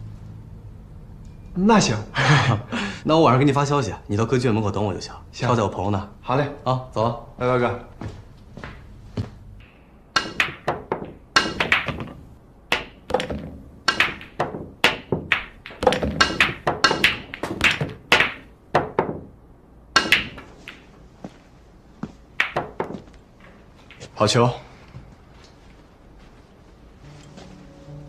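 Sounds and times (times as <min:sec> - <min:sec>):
billiard balls clacking: 0:09.6 - 0:21.4, 0:22.0 - 0:24.4.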